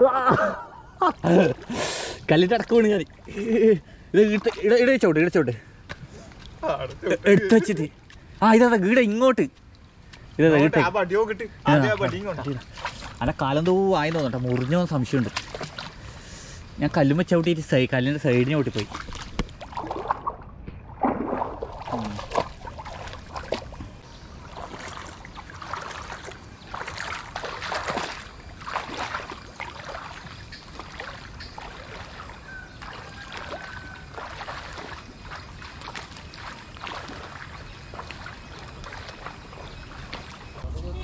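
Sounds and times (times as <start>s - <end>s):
water sloshing from wading: 2.6s - 4.8s, 11.6s - 16.5s, 18.2s - 40.7s.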